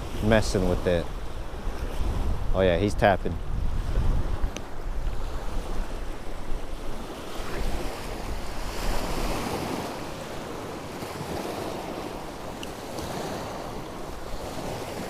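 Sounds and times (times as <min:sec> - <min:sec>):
choppy water: 0:00.0 - 0:15.0
gusty wind on microphone: 0:00.0 - 0:15.0.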